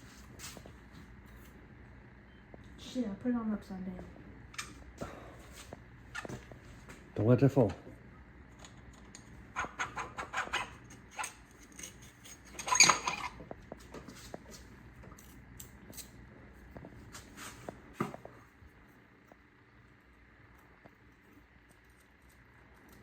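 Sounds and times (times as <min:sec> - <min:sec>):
tools and metal parts clicking: 0:09.9 - 0:13.4.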